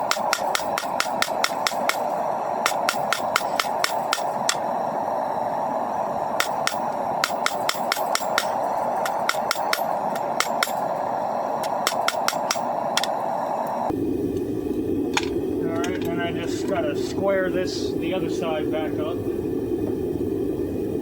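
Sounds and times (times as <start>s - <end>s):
hammer striking hot steel on anvil: 0.0s - 4.7s, 6.4s - 13.2s
steady rushing noise: 0.0s - 21.0s.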